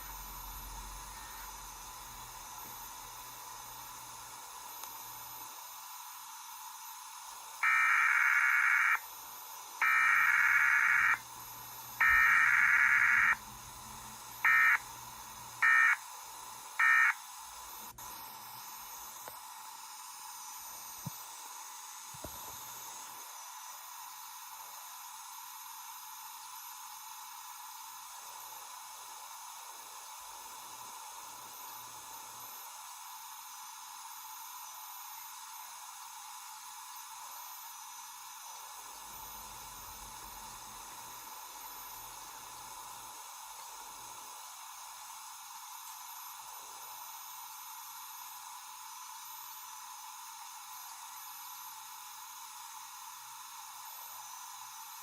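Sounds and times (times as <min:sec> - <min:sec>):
static hiss: 0:00.0 - 0:55.0
data bursts: 0:07.6 - 0:09.1, 0:09.8 - 0:11.2, 0:12.0 - 0:15.0, 0:15.6 - 0:16.0, 0:16.8 - 0:17.2.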